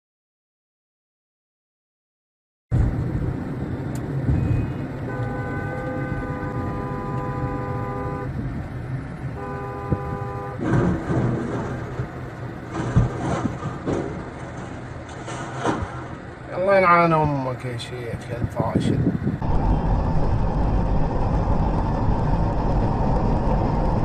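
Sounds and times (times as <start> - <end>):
vehicle engine and road noise: 2.7 - 24.0
vehicle horn blasts: 4.4 - 8.4, 9.3 - 10.6
loud sudden bangs and knocks: 10.6 - 12.1, 12.7 - 14.3.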